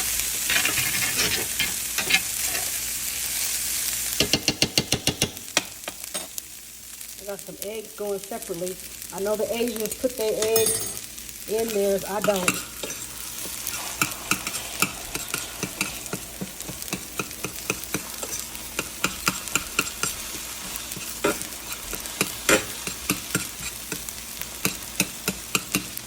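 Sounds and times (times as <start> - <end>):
food sizzling in a frying pan: 0.0 - 26.0
utensil scraping a pan: 0.4 - 2.8, 11.7 - 25.9.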